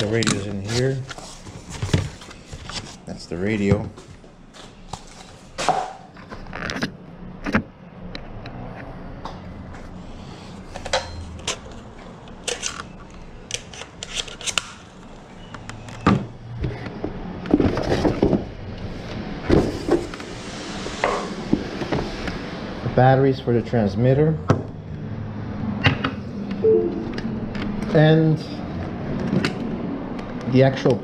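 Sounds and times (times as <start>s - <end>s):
packaging rustling: 0.0s - 3.2s.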